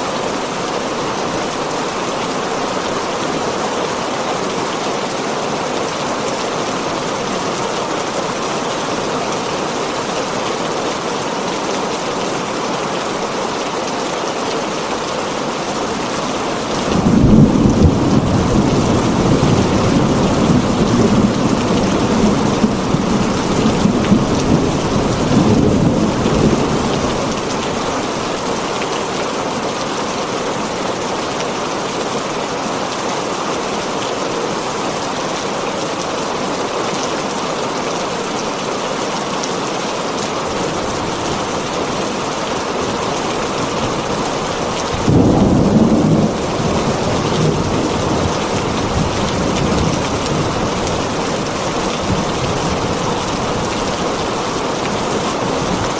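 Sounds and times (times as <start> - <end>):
heavy rain on a tin roof: 0.0 - 55.9
thunder rumbling: 16.7 - 28.2, 43.7 - 54.3.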